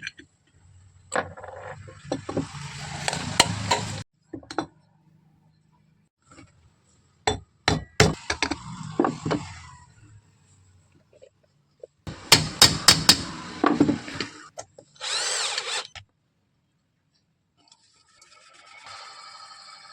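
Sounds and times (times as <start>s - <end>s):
power tool whirring: 2.4s - 4.0s, 12.1s - 16.0s.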